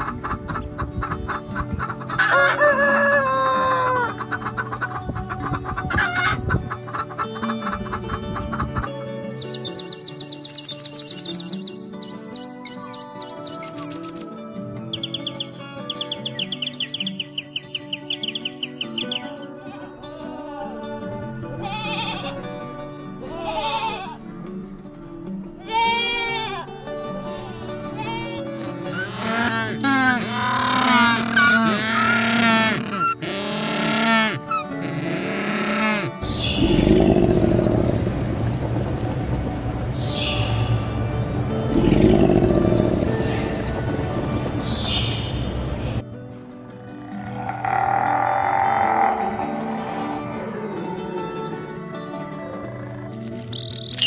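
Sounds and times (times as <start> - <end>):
background music: 0.0 - 54.0
rooster crowing: 2.2 - 4.1
livestock bleating: 21.4 - 22.5, 23.2 - 24.3, 25.6 - 26.7, 27.8 - 34.3, 47.0 - 51.2.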